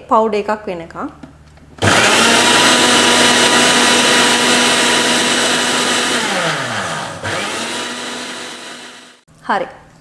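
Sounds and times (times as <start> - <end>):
electric blender grinding: 1.8 - 9.2.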